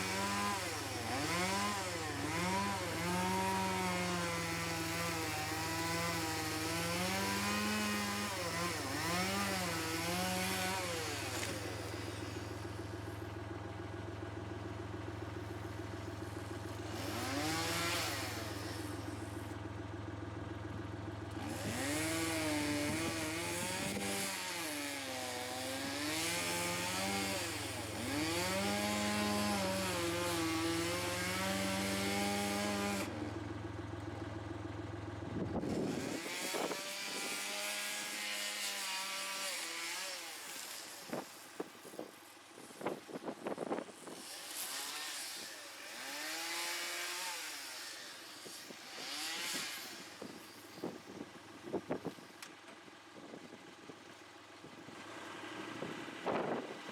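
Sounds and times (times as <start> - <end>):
chainsaw running and cutting: 0.0 - 56.9.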